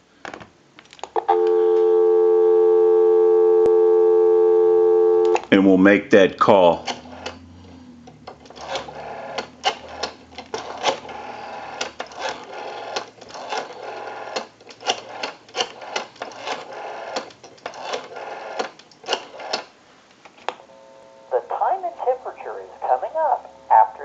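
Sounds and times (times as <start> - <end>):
rotary phone dial whirring and clicking: 6.8 - 19.7.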